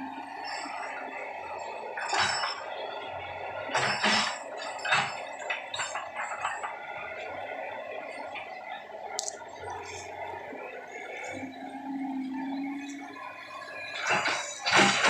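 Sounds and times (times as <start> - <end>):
excavator machine hum: 0.0 - 15.0
metallic clanks and knocks: 3.7 - 6.9, 14.0 - 15.0.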